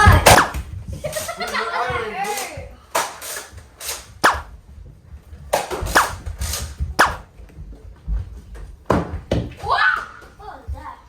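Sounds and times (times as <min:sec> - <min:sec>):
foam dart blaster pops: 0:00.0 - 0:00.7, 0:02.9 - 0:04.5, 0:05.5 - 0:07.2.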